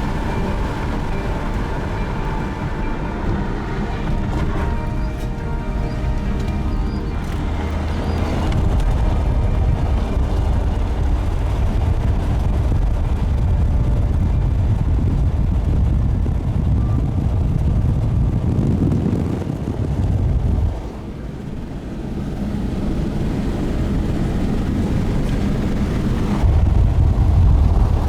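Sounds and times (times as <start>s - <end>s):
background music: 0.0s - 15.7s
car engine and road noise: 0.0s - 28.0s.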